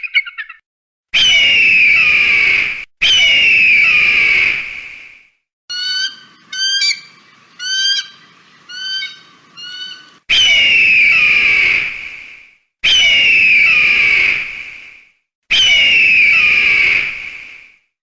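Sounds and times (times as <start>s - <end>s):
harsh eagle screams: 1.2s - 4.9s, 5.7s - 12.2s, 12.8s - 14.6s, 15.5s - 17.5s
short clear eagle calls: 5.7s - 11.8s.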